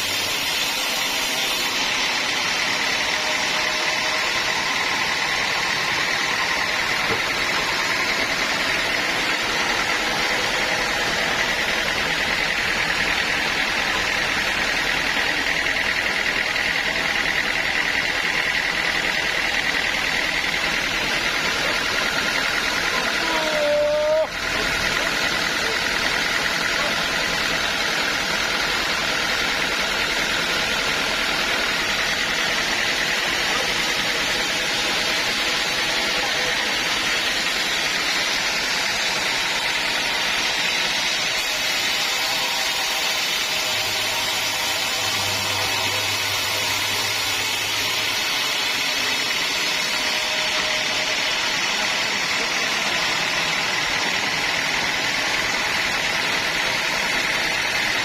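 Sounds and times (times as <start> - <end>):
sawmill machinery running: 0.0 - 58.0.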